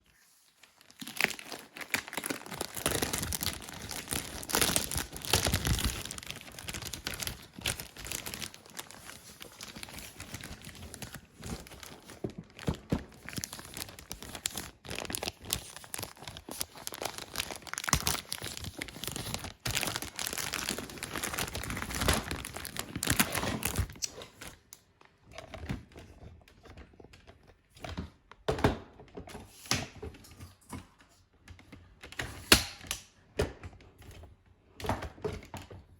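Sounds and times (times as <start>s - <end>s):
packaging crinkling and tearing: 0.0s - 24.8s.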